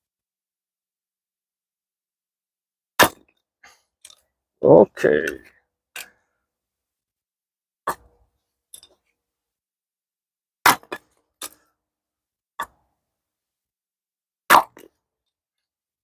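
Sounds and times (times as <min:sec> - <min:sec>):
axe splitting firewood: 0:10.6 - 0:11.6, 0:14.5 - 0:14.9.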